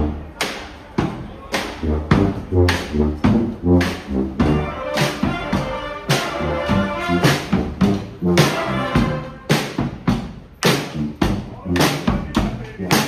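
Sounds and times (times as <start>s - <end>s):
horns sounding notes: 0.0s - 10.2s
brass band playing: 0.0s - 13.0s
steady drum beat: 0.0s - 13.0s.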